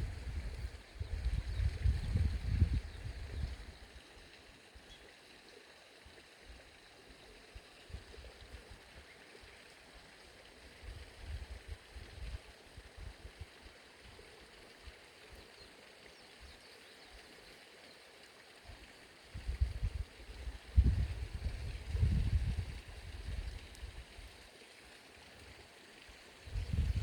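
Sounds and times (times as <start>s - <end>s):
wind gusts on microphone: 0.0s - 3.7s, 19.4s - 24.0s, 26.4s - 27.0s.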